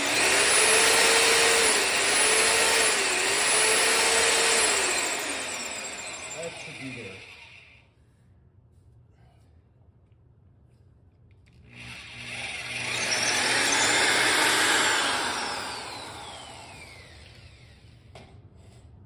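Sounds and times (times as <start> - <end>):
electric drill drilling concrete: 0.0 - 7.8, 11.7 - 18.0.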